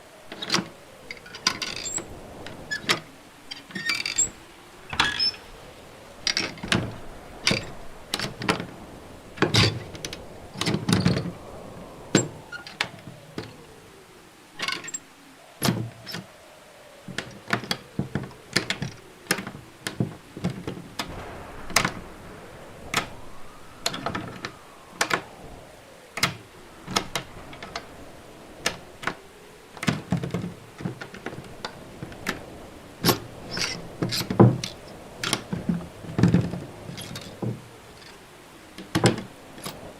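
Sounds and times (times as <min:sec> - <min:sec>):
faint rising and falling tones: 0:00.0 - 0:34.1.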